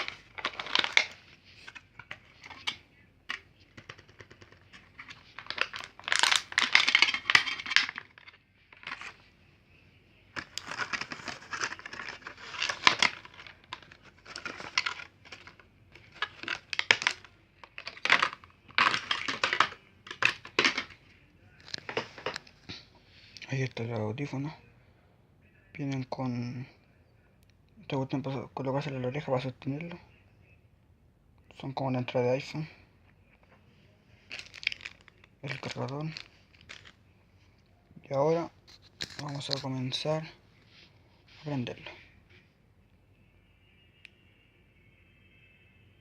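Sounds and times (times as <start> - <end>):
packaging crinkling and tearing: 0.0 - 2.8, 3.8 - 9.2, 10.4 - 21.0, 21.6 - 22.5, 34.3 - 37.0, 38.6 - 40.0.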